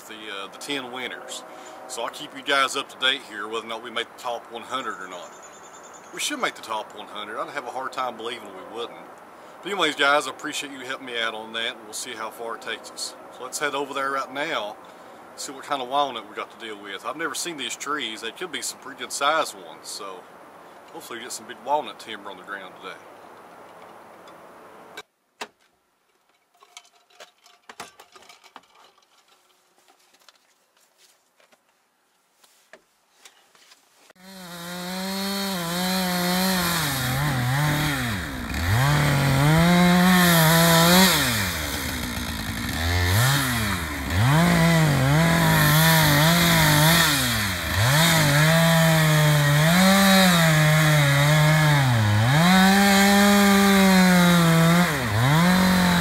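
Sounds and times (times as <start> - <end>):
chainsaw cutting wood: 34.2 - 56.0.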